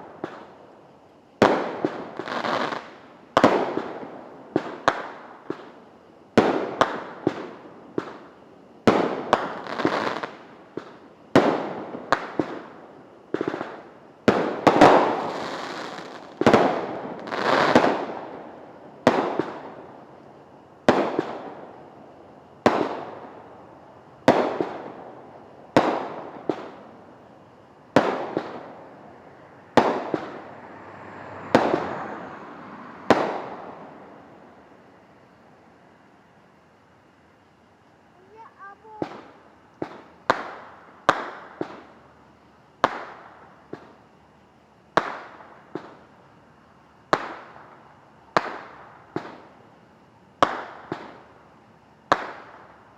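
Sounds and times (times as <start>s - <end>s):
fireworks bangs: 1.4s - 5.8s, 8.9s - 20.0s, 24.2s - 26.9s, 27.9s - 29.1s, 29.7s - 30.8s, 31.4s - 34.4s, 38.2s - 42.0s, 42.8s - 44.0s, 44.9s - 46.0s, 50.4s - 51.3s, 52.1s - 52.8s.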